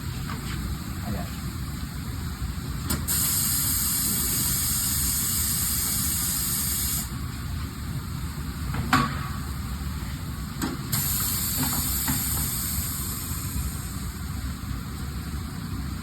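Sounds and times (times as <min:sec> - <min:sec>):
compressed air hissing: 0:02.9 - 0:07.2, 0:10.9 - 0:14.1.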